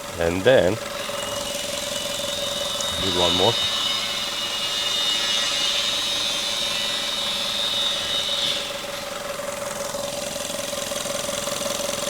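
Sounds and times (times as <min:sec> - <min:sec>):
high steady whine: 0:00.0 - 0:10.0.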